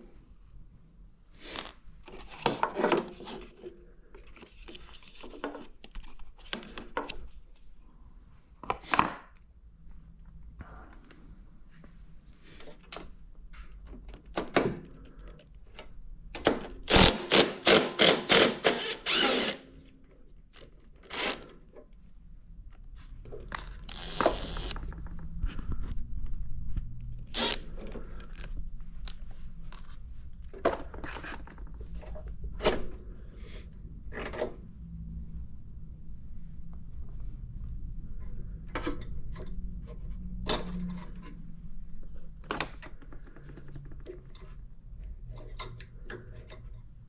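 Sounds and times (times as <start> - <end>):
scrape: 1.3 - 5.4.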